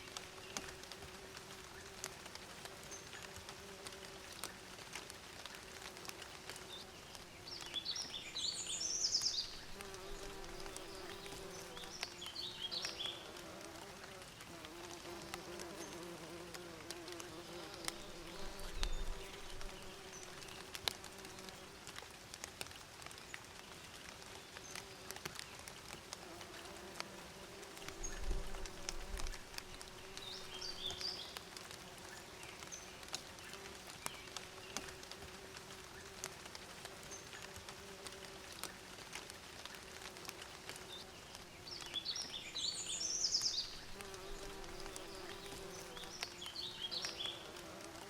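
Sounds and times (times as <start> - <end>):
bees buzzing: 9.5 - 21.5, 43.7 - 48.0.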